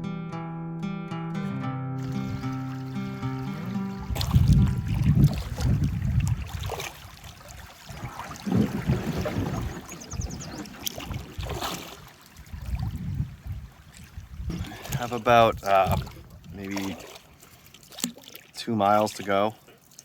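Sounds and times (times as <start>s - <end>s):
paddle strokes swishing through water: 2.0s - 20.0s
wind rumble on microphone: 2.1s - 2.6s, 3.8s - 16.7s.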